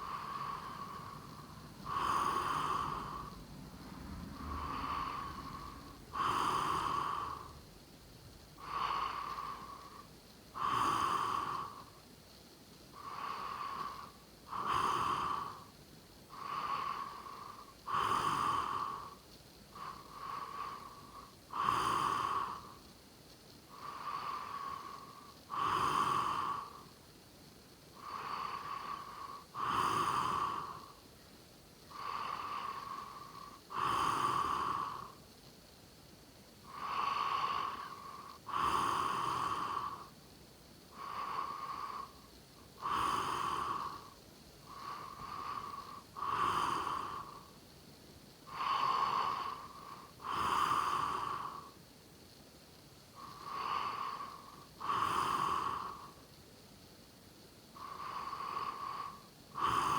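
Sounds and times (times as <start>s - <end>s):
person snoring: 0.0s - 3.4s, 4.3s - 7.6s, 8.6s - 11.9s, 13.0s - 15.6s, 16.4s - 19.2s, 19.8s - 22.8s, 23.8s - 26.8s, 28.0s - 30.9s, 31.9s - 35.2s, 36.7s - 40.1s, 42.8s - 47.5s, 48.5s - 51.8s, 53.2s - 56.2s, 57.8s - 59.9s
soft breathing: 0.0s - 59.9s.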